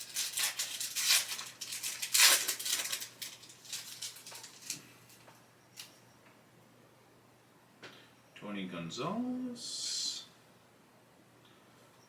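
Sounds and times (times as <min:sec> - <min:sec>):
foil wrapper crinkling and tearing: 0:00.0 - 0:04.8.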